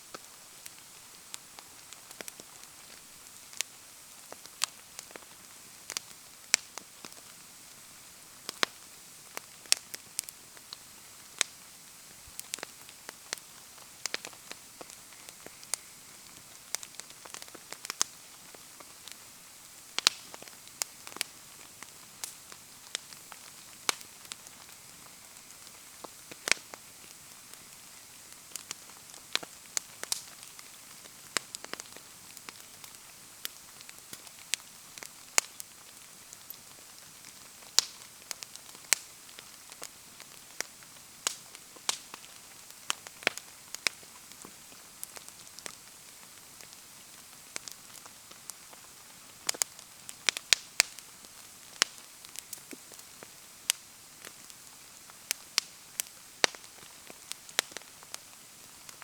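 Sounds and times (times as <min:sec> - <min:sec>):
bonfire crackling and popping: 0:00.0 - 0:59.0.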